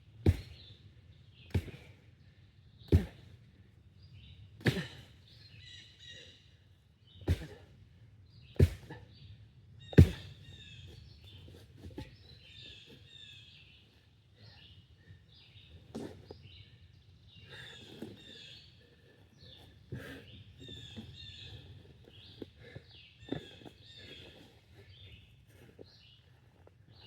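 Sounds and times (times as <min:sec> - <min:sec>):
axe chopping wood: 0:00.2 - 0:00.6, 0:01.5 - 0:01.9, 0:02.9 - 0:03.3, 0:04.6 - 0:05.0, 0:07.3 - 0:07.6, 0:08.6 - 0:09.0, 0:09.9 - 0:10.4
small birds chirping: 0:08.3 - 0:27.0.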